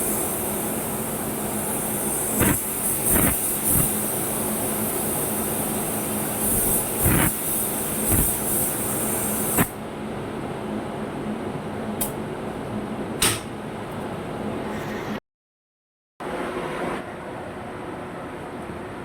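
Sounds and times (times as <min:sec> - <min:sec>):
machine humming and hissing: 0:00.0 - 0:12.9.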